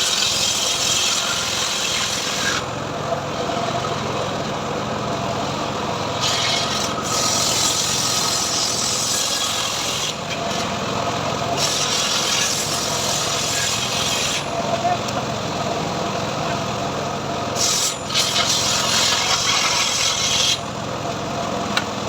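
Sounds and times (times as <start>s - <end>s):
saw blade cutting wood: 0.0s - 2.7s, 6.1s - 10.8s, 11.6s - 14.6s, 17.6s - 20.7s
sawmill engine running: 0.0s - 22.0s.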